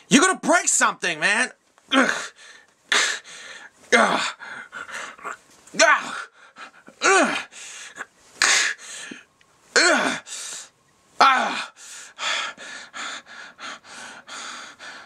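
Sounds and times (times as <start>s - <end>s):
man huffing and gasping: 1.9s - 15.0s
man yelling with effort: 5.8s - 6.3s.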